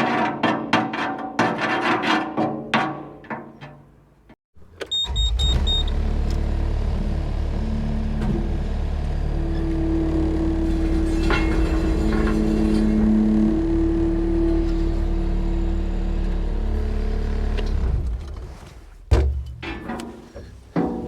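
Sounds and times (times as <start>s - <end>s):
high electronic beeps: 4.9s - 5.9s
skid steer engine running: 5.0s - 18.2s.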